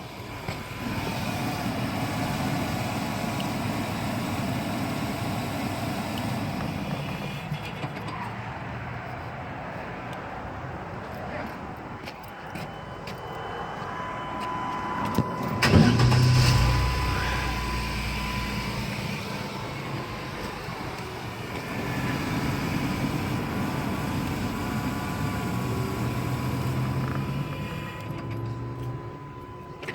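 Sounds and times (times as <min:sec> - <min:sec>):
van engine starting and idling: 0:00.0 - 0:08.0, 0:14.0 - 0:29.9.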